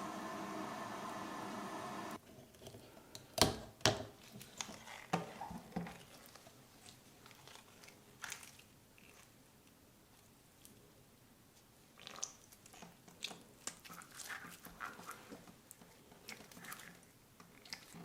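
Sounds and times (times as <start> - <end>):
steady hum: 0.0 - 2.2.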